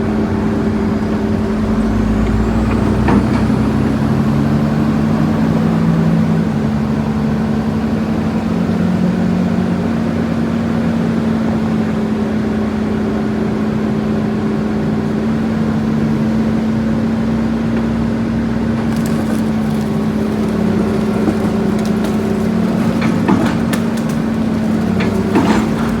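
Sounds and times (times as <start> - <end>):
diesel engine running: 0.0 - 26.0
metallic clanks and knocks: 18.9 - 26.0.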